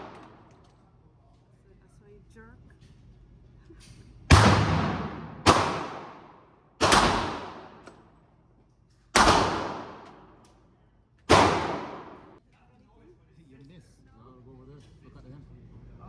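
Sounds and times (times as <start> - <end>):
gunshots: 0.0 - 0.4, 4.3 - 7.9, 9.2 - 10.3, 11.3 - 12.4.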